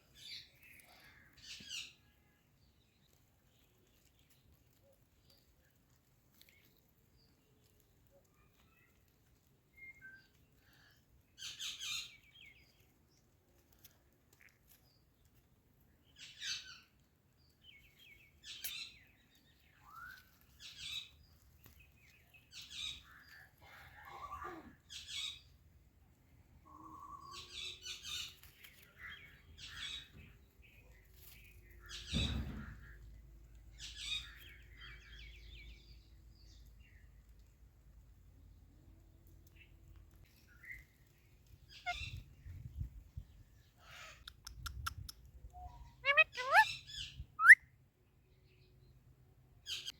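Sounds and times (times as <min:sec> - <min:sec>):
parrot chirping: 0:43.9 - 0:47.6.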